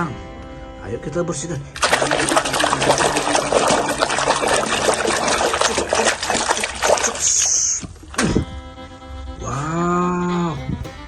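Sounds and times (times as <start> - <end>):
water splashing and trickling: 1.8 - 8.5.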